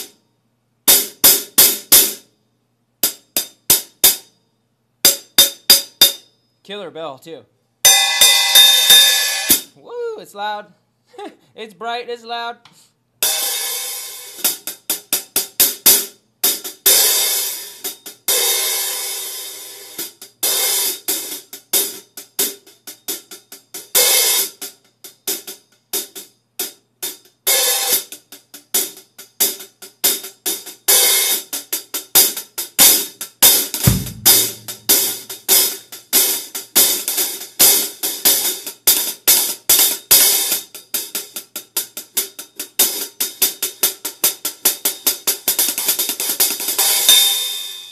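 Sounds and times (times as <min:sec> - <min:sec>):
hi-hats struck with drumstick: 0:27.5 - 0:47.9
low thump: 0:33.9 - 0:35.2.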